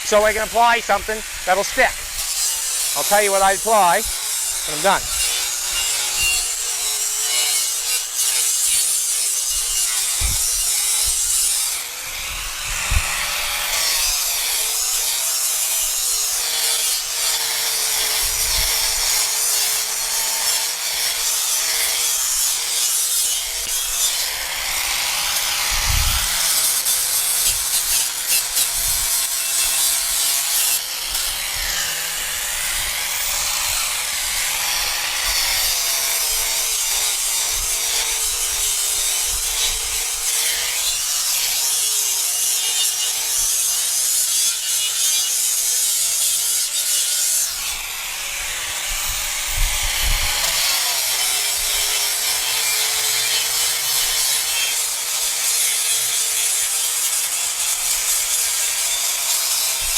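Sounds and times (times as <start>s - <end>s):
power tool abrading surface: 0.0s - 59.9s.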